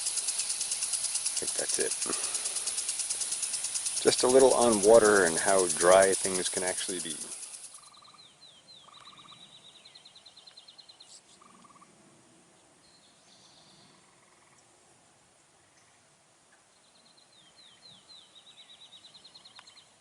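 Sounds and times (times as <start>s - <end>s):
short buzzy bird trills: 0.0s - 8.2s
faint birdsong with trill: 0.0s - 11.9s, 12.5s - 14.7s, 15.6s - 20.0s.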